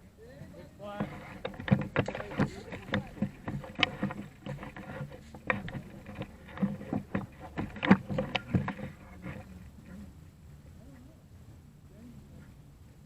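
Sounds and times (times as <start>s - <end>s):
low steady hum: 0.0s - 13.0s
irregular knocks and clicks: 0.9s - 10.0s.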